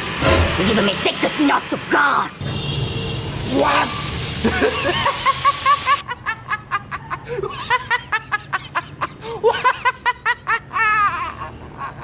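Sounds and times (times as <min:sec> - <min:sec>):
hiss: 0:03.2 - 0:06.0
person snickering: 0:04.4 - 0:06.0.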